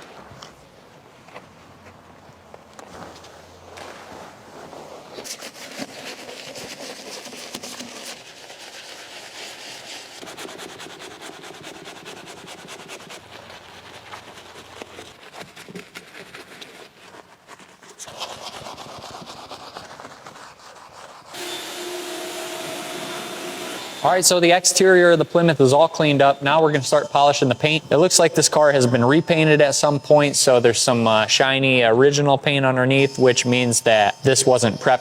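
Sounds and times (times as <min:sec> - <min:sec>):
scrubbing on car body: 0:02.9 - 0:27.6
steady machine hum: 0:21.4 - 0:28.2.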